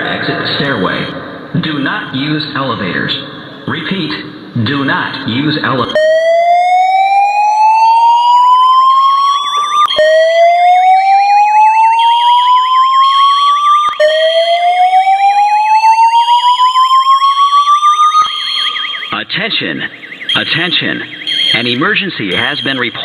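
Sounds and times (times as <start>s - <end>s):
fast warbling alarm tone: 5.8s - 23.0s
slow-whoop fire alarm tone: 5.9s - 19.2s, 19.8s - 23.0s.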